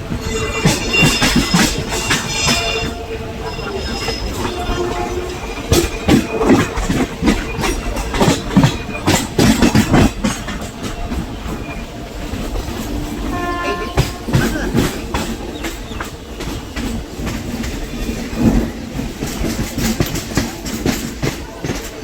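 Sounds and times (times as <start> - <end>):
train wheels clattering over rail joints: 0.0 - 22.0
high wheel squeal: 0.1 - 17.1.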